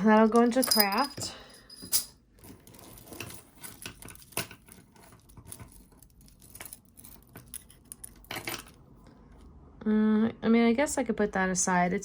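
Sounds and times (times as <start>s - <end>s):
jewelry pieces clinking: 0.0s - 8.8s.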